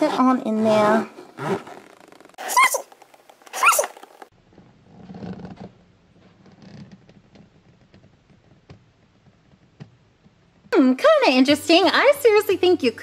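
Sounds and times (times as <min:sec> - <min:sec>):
plastic creaking and rubbing: 0:00.7 - 0:10.8
squishy toy squeak: 0:02.4 - 0:04.0.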